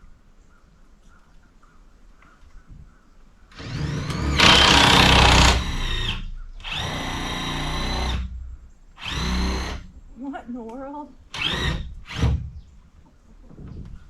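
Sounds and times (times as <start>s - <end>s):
circular saw cutting: 3.6s - 8.3s.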